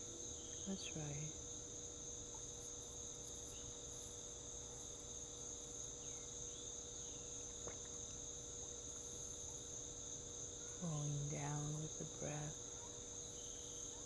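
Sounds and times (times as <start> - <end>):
crickets chirping: 0.0 - 14.0.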